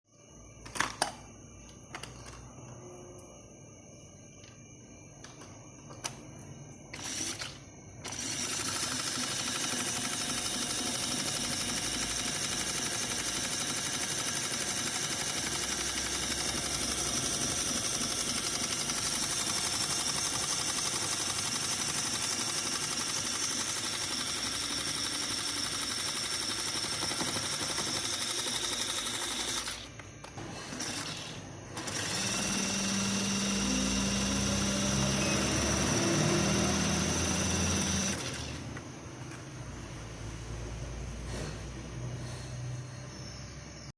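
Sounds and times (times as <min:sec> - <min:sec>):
small electric motor whining: 0:06.9 - 0:38.8.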